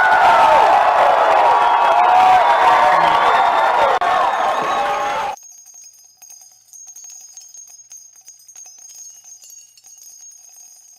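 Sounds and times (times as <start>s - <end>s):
concert crowd cheering: 0.0s - 5.4s
faint tinkling bell tones: 5.4s - 10.9s.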